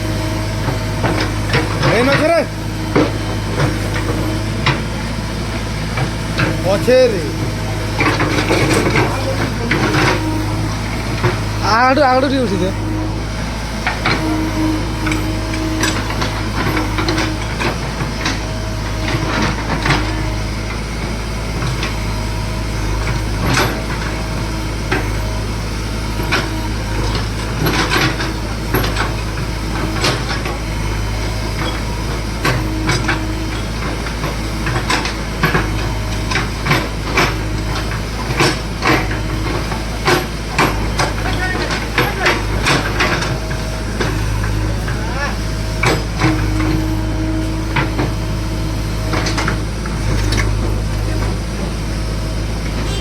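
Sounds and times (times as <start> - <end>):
digger diesel engine running: 0.0 - 53.0
knocks and clanks: 0.6 - 22.2, 22.8 - 25.4, 26.1 - 48.4, 49.0 - 53.0.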